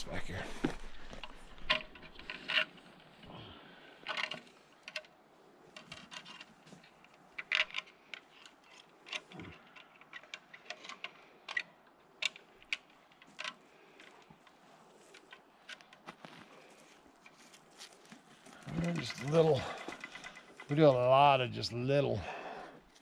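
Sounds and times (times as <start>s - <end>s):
footsteps crunching on twigs: 16.0s - 20.2s.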